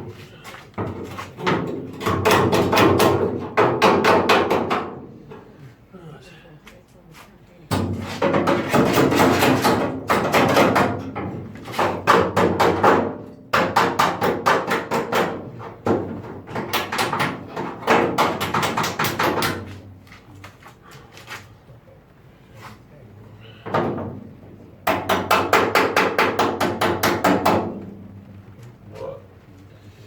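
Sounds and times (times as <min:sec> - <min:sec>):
hammer beating sheet steel: 0:01.3 - 0:05.0, 0:07.7 - 0:19.8, 0:24.8 - 0:28.0.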